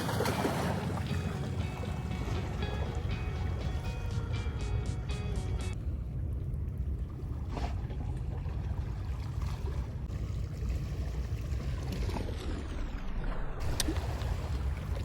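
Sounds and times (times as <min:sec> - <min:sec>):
sea surf on rocks: 0:00.0 - 0:04.1
wind: 0:00.0 - 0:15.0.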